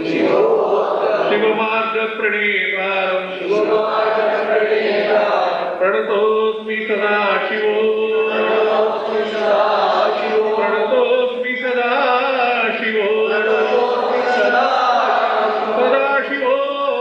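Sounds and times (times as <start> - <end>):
voices chanting: 0.0 - 1.7, 3.1 - 5.9, 7.3 - 17.0.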